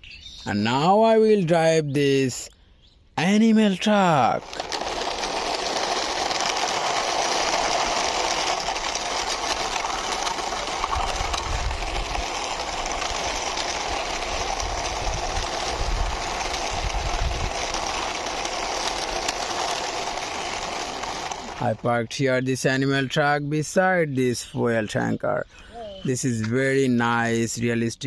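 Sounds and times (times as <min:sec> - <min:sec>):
toy truck wheels rolling: 0:03.2 - 0:23.2.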